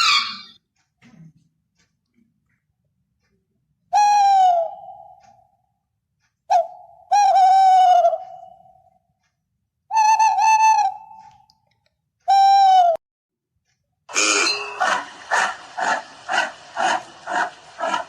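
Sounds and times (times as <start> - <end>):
loud echoing animal calls: 0.0 - 0.6, 14.1 - 18.0.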